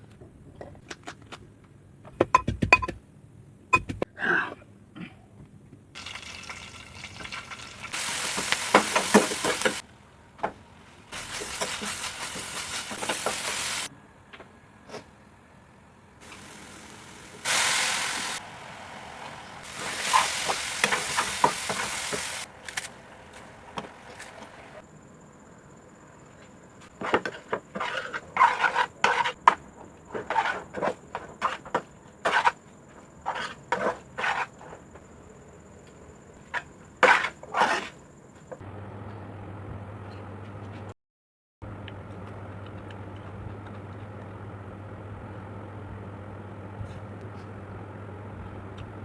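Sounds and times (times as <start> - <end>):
food sizzling in a hot pan: 6.0 - 9.8, 11.1 - 13.9, 16.2 - 22.5.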